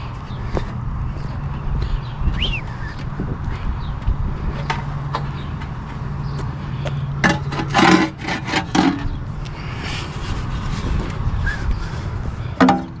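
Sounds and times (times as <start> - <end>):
scrap clattering in metal bin: 7.2 - 9.0.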